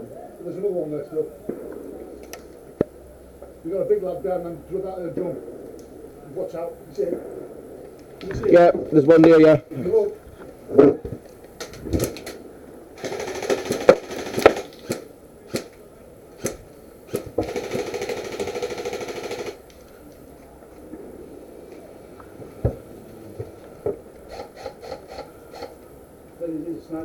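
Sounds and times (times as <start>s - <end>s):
airsoft gun shots: 13.0s - 15.8s, 16.4s - 19.6s.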